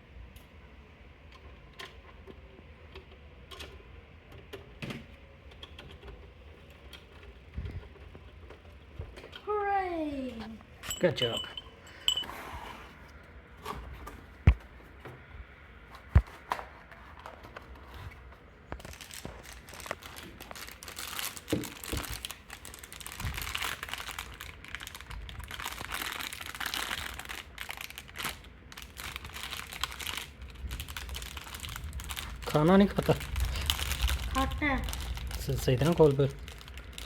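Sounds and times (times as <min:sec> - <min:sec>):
packaging crinkling and tearing: 0:18.7 - 0:37.0.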